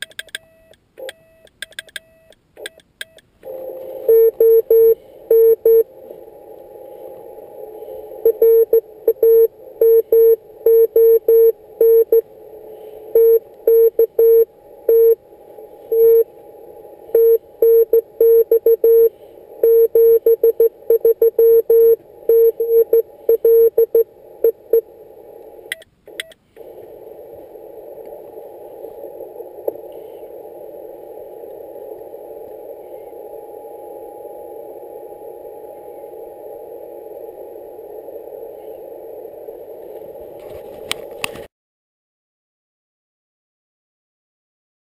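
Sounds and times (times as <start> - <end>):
morse code beeps: 3.1 - 5.9, 8.2 - 12.2, 13.1 - 15.2, 15.9 - 16.3, 17.1 - 24.8
receiver hiss: 3.2 - 41.5.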